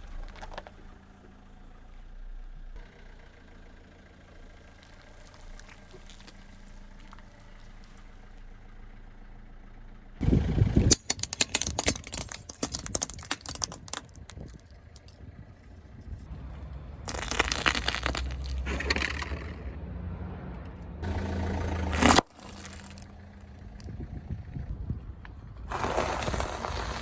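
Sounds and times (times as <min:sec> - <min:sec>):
car engine idling: 0:00.2 - 0:11.0, 0:13.7 - 0:25.7
crackling and snapping: 0:10.7 - 0:15.3, 0:17.0 - 0:19.6, 0:21.9 - 0:23.9
tyre crushing something: 0:10.8 - 0:15.2, 0:17.1 - 0:19.6, 0:21.9 - 0:23.1.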